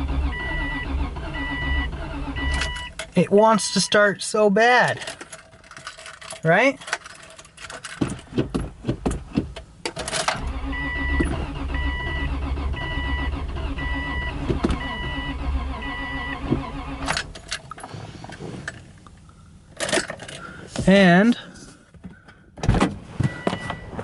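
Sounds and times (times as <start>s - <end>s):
starter motor cranking engine: 0.0s - 2.9s, 10.3s - 17.4s.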